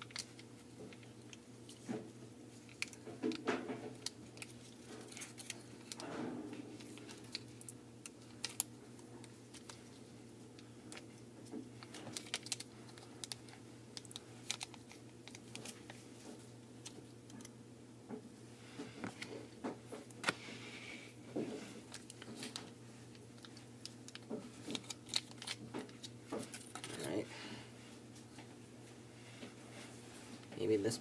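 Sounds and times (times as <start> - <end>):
foil packet crinkling: 0.0 - 1.9, 2.5 - 6.0, 6.8 - 10.0, 11.8 - 16.0, 21.8 - 27.2.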